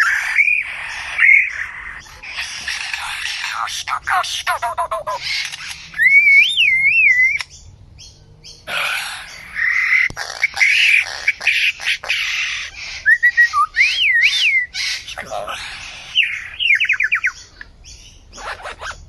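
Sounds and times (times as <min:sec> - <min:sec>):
bird squawking: 0:00.0 - 0:07.5, 0:08.5 - 0:19.0.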